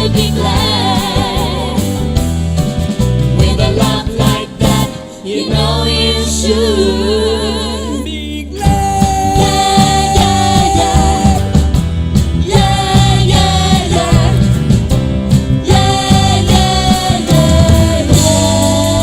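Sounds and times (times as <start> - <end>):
drums: 0.0 - 19.0
live band playing: 0.0 - 19.0
person singing: 6.5 - 11.6.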